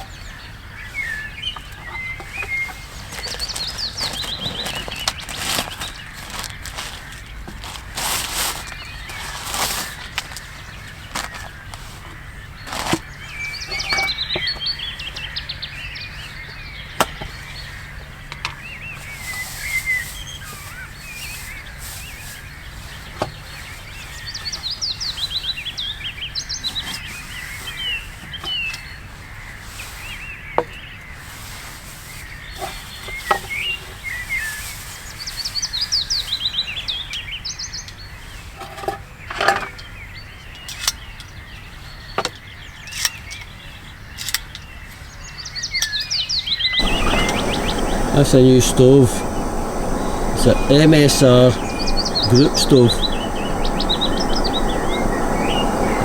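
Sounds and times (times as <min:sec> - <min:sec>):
songbirds singing: 0:46.8 - 0:56.0.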